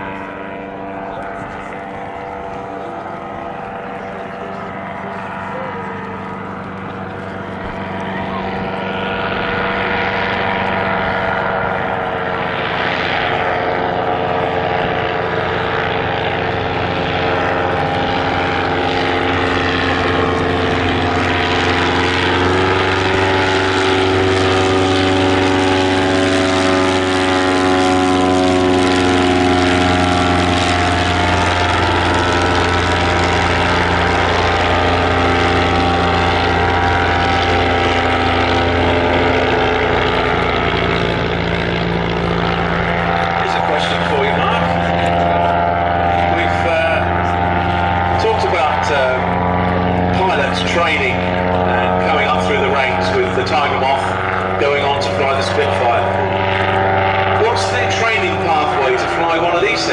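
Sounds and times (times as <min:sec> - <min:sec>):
propeller aircraft engine running: 0:00.0 - 0:59.9.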